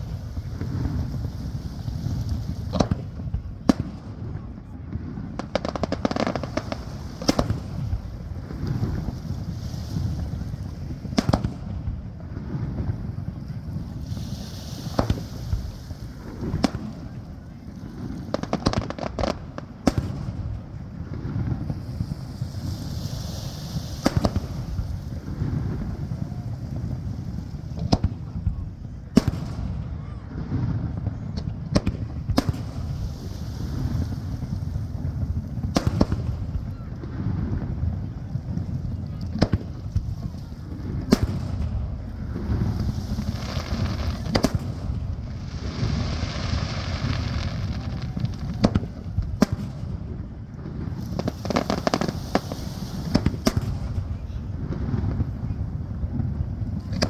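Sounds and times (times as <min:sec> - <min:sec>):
fireworks bursting with bangs: 0:00.0 - 0:57.0
wind rumble on microphone: 0:00.0 - 0:57.0
crackling pops: 0:05.4 - 0:08.0, 0:18.3 - 0:20.6, 0:24.0 - 0:24.9, 0:29.2 - 0:29.8, 0:35.6 - 0:37.2, 0:39.1 - 0:50.1, 0:51.0 - 0:55.3, 0:56.2 - 0:57.0.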